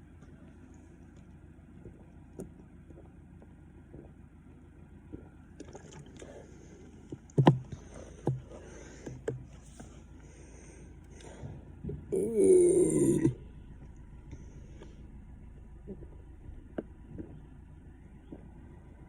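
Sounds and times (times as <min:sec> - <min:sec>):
person gulping soda: 0:01.8 - 0:04.4, 0:05.0 - 0:06.4, 0:11.9 - 0:13.4.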